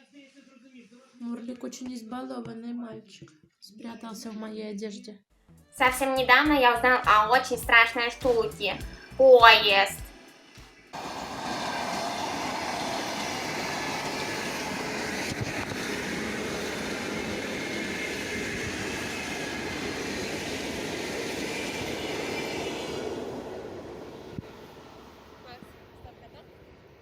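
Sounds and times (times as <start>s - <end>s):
train passing on rails: 6.0s - 27.0s.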